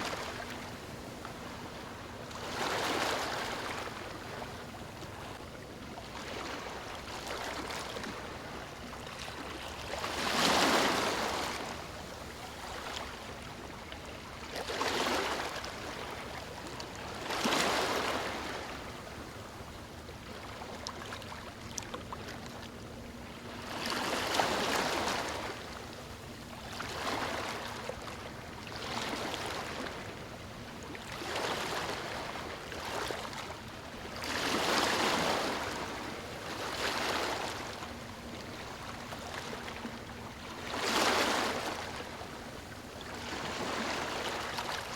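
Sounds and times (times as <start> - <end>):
ocean waves breaking on beach: 0.0 - 5.4, 9.4 - 13.2, 34.1 - 44.9.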